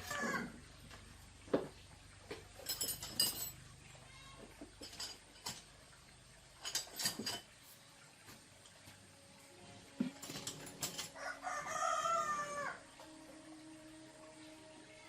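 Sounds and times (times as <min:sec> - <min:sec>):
small metal parts clinking: 0:02.6 - 0:03.6, 0:04.7 - 0:05.8, 0:06.6 - 0:07.6, 0:10.1 - 0:11.2.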